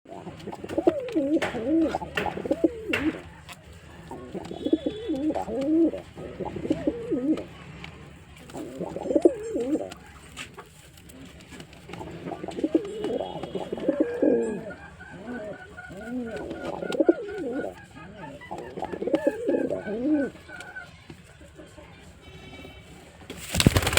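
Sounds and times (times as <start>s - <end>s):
pigeon cooing: 0.1s - 7.5s, 8.4s - 21.0s.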